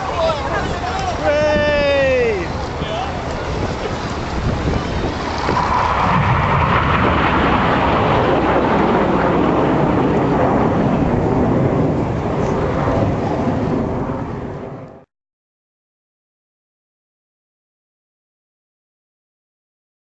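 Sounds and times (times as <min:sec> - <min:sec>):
jet engine roar: 0:00.0 - 0:15.1.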